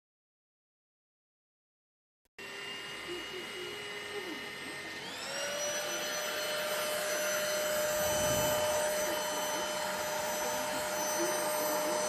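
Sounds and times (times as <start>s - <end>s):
stick vacuum motor whining: 2.4s - 12.0s.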